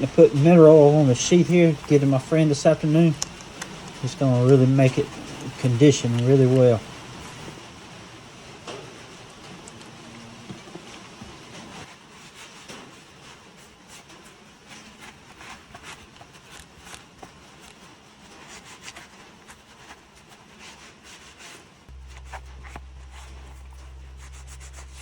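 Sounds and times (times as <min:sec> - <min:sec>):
scratchy rubbing on leather: 0:11.8 - 0:25.0
steady low hum: 0:21.9 - 0:25.0.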